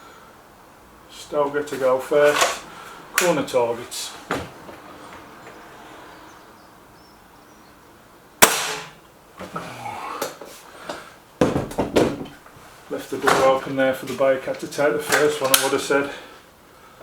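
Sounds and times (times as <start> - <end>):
air rifle shot: 8.4 - 9.0.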